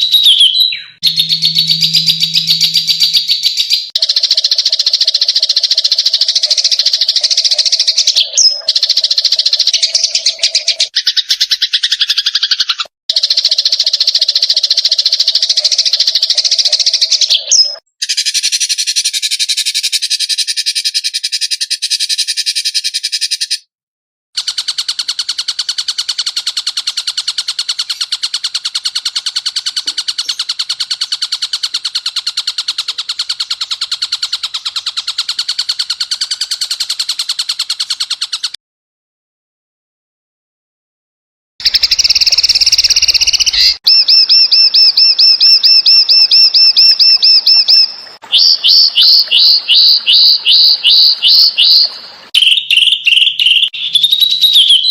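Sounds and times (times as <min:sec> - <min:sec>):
high bird call: 0:00.0 - 0:04.0, 0:41.6 - 0:54.9
fast pulsed bird trill: 0:00.0 - 0:23.7, 0:24.4 - 0:38.6, 0:41.6 - 0:54.9
rasping buzzy bird song: 0:00.0 - 0:23.7, 0:24.4 - 0:38.6, 0:41.6 - 0:54.9.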